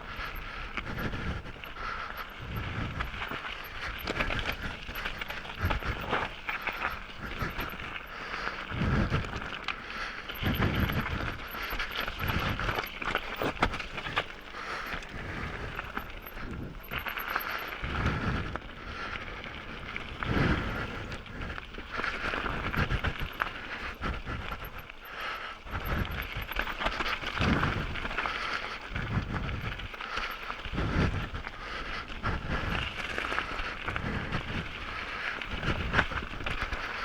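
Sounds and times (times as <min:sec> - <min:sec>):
heavy breathing into microphone: 0:00.0 - 0:19.5
bike rattling over rocks: 0:00.0 - 0:37.0.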